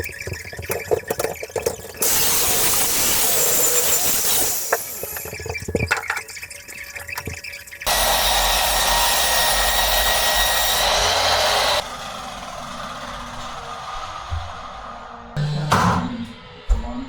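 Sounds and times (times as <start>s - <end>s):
power tool running: 2.0s - 5.1s, 7.9s - 14.4s.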